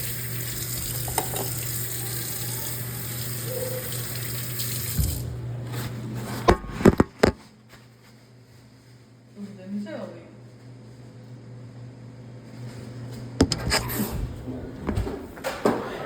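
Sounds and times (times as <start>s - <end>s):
tap running into sink: 0.4s - 1.8s, 3.9s - 5.3s.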